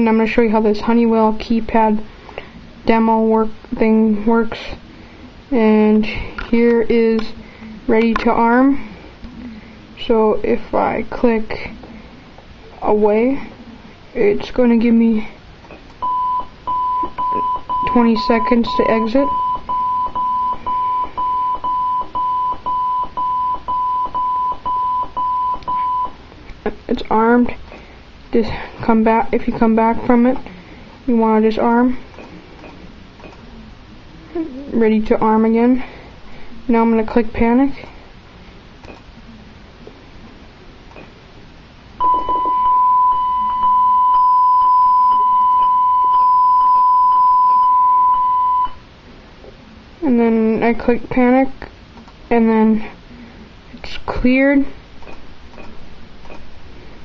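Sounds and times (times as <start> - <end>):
alarm keypad beeping: 16.0 - 26.2, 42.0 - 48.8.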